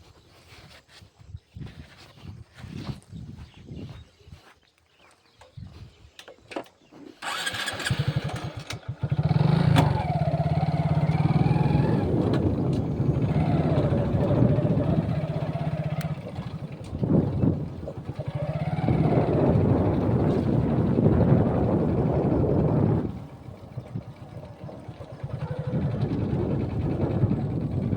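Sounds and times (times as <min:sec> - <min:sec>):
small engine running: 0:07.2 - 0:27.9.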